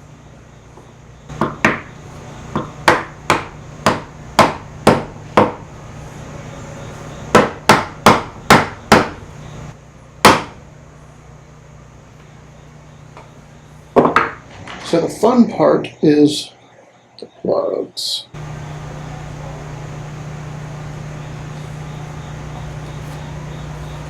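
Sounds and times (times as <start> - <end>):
hammer tapping wood: 1.3 - 1.9, 2.5 - 5.6, 7.3 - 9.2, 10.2 - 10.6.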